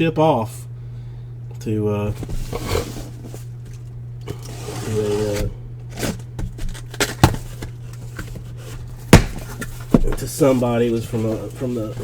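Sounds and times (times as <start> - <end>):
steady low hum: 0.0 - 12.0
cardboard scraping: 2.0 - 12.0
sharp knocks: 9.2 - 10.1.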